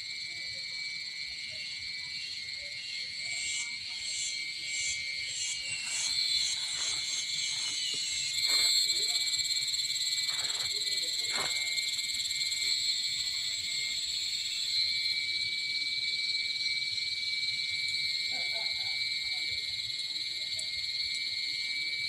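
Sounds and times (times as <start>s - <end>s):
insects chirring shrilly: 2.2s - 18.4s.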